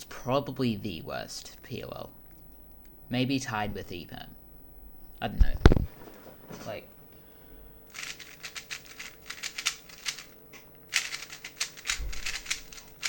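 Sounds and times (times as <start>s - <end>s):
puzzle cube plastic clicking: 8.0s - 13.0s.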